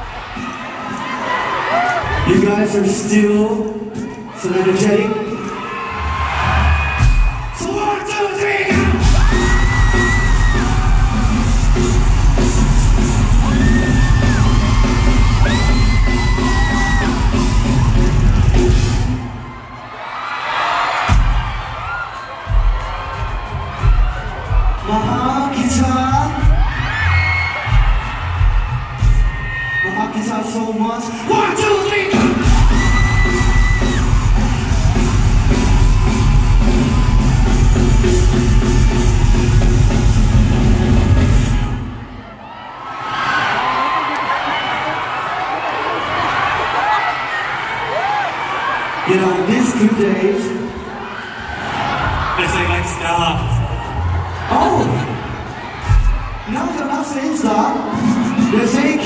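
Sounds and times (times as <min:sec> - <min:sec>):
crowd cheering: 0:00.0 - 0:59.0
crowd yelling along: 0:00.0 - 0:59.0
live rock band playing: 0:08.7 - 0:19.5, 0:32.0 - 0:42.0.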